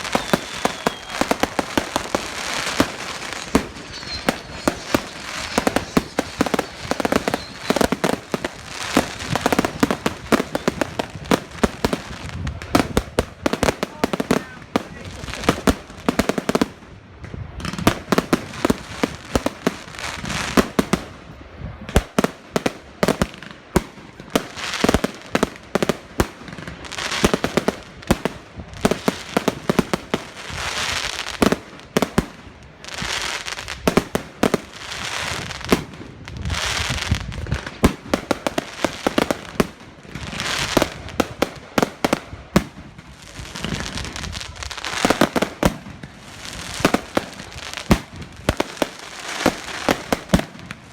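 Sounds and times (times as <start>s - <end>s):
fireworks hissing: 0.0s - 16.6s
fireworks bangs and pops: 0.0s - 50.9s.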